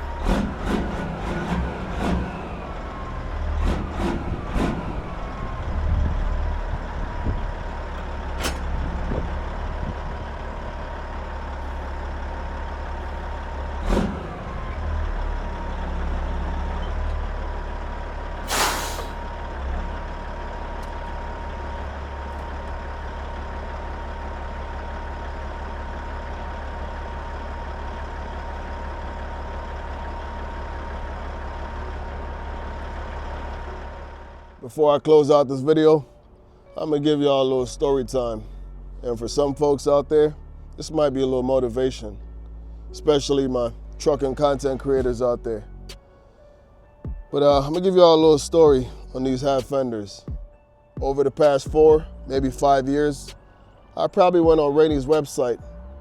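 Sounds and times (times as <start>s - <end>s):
diesel truck idling: 0.0s - 56.0s
air brake hiss: 18.4s - 19.3s.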